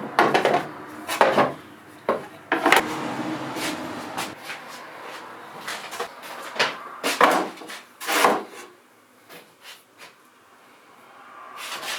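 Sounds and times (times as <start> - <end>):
handling knocks and scrapes: 0.1 - 4.6.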